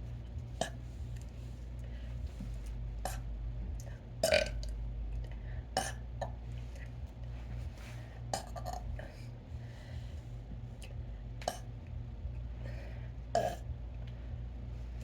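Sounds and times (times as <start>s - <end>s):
person burping: 4.2s - 4.6s, 5.8s - 6.3s, 13.4s - 13.6s.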